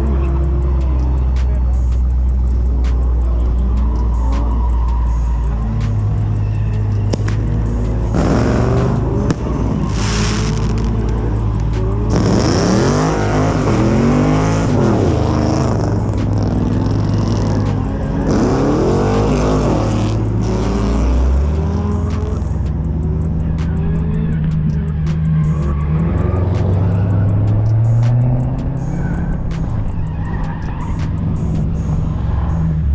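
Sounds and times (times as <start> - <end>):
car engines revving: 0.0 - 32.9
low engine drone: 0.0 - 32.9
music: 0.0 - 32.9
tyres squealing: 0.0 - 32.9.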